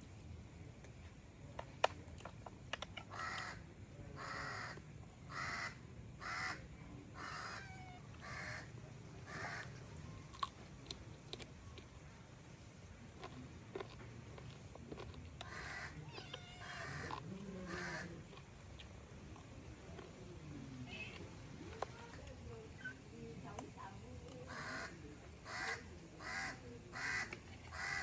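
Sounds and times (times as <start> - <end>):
bird giving harsh calls: 4.2 - 6.6, 7.2 - 8.7, 24.5 - 28.0.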